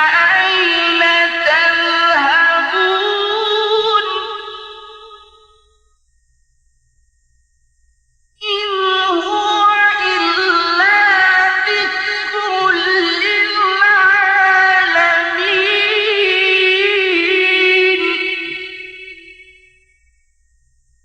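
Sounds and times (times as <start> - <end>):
man reciting melismatic chant: 8.4 - 19.4.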